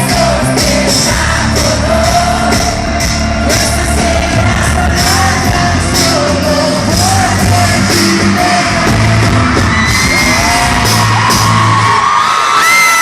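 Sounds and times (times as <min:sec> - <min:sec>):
person singing: 0:00.0 - 0:11.1
live pop-rock band playing: 0:00.0 - 0:12.3
crowd screaming: 0:07.0 - 0:13.0.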